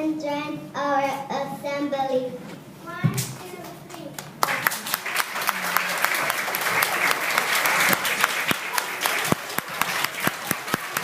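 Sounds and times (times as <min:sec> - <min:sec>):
audience applauding: 0:04.4 - 0:11.0.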